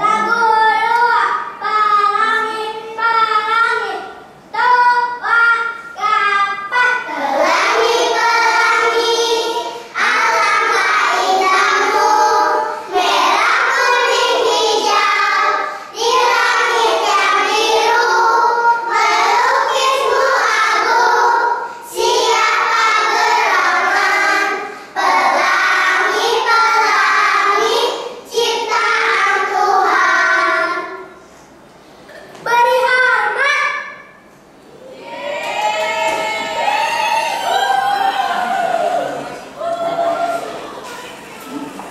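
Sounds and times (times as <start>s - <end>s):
children's choir singing: 6.0s - 31.2s.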